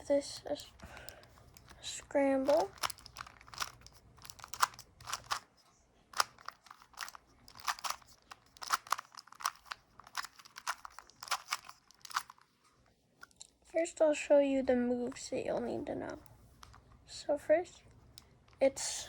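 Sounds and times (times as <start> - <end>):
puzzle cube clicking: 0.7 - 5.5, 6.1 - 12.4.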